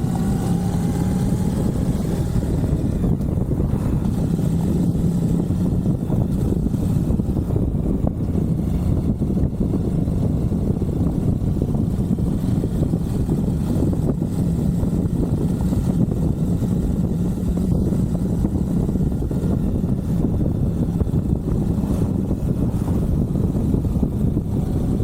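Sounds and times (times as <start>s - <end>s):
motorcycle engine running: 0.0s - 25.0s
wind rush on microphone: 0.0s - 25.0s.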